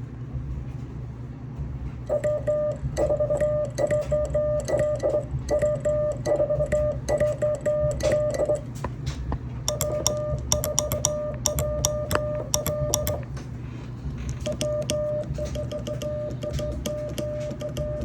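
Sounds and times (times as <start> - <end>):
low steady hum: 0.0 - 18.0
morse code sidetone beeps: 2.1 - 8.7, 9.7 - 13.2, 14.4 - 18.0.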